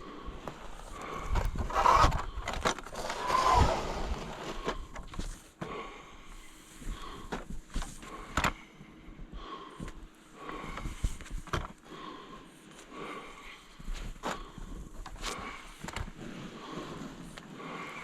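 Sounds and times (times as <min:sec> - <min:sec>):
crunches and scrapes in snow: 0:02.8 - 0:05.5, 0:13.3 - 0:18.0.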